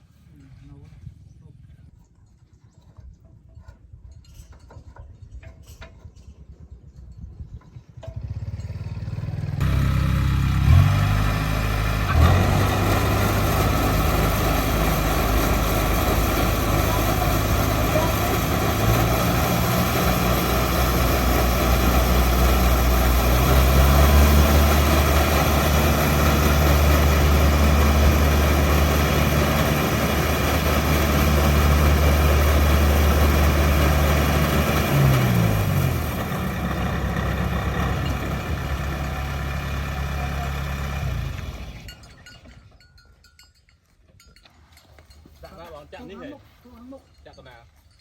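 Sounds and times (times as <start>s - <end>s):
diesel engine running: 8.3s - 42.1s.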